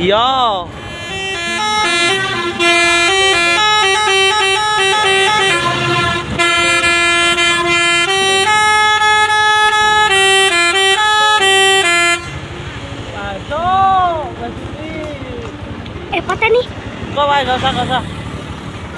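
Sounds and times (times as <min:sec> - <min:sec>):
musical horn playing a tune: 0:00.8 - 0:12.4.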